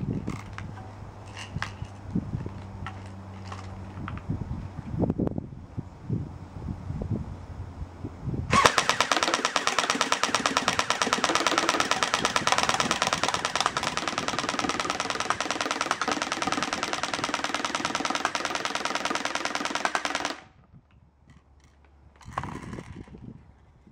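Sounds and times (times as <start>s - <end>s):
airsoft rifle firing full-auto: 8.5s - 20.5s.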